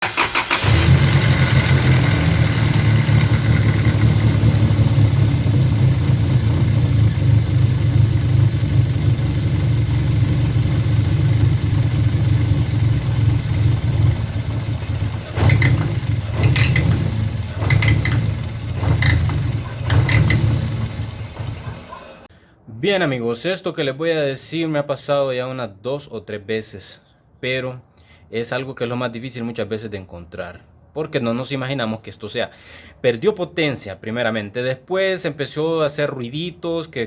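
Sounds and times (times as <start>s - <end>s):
car engine idling with rattle: 0.1s - 22.3s.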